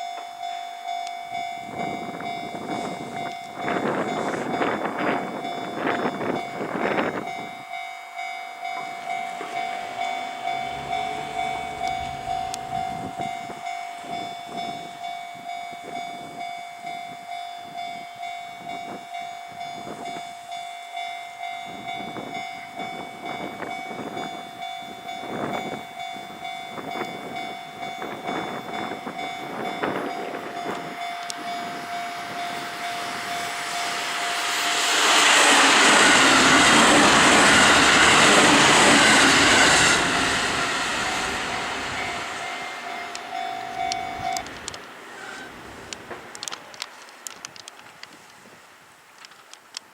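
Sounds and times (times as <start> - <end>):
level crossing bell ringing: 0.0 - 34.8, 40.6 - 44.9
approaching train: 0.0 - 49.9.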